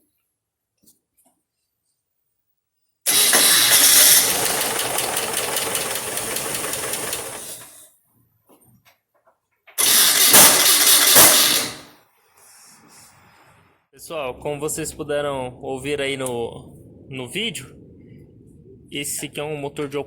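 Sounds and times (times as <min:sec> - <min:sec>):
starter motor cranking harshly: 0:03.1 - 0:07.8, 0:09.8 - 0:11.8.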